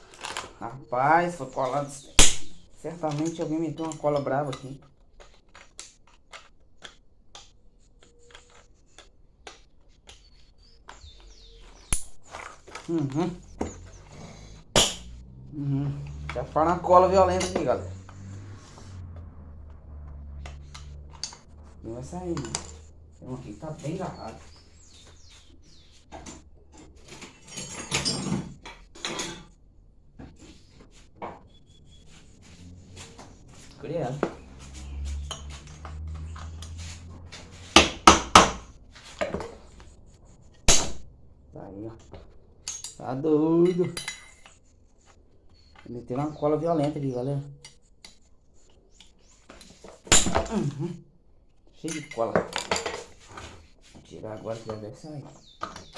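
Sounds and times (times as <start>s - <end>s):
hand tools clicking and tapping: 2.2s - 15.2s, 16.0s - 25.4s, 32.7s - 40.0s
metal tools scraping: 15.9s - 19.0s, 20.2s - 29.6s, 43.6s - 45.2s.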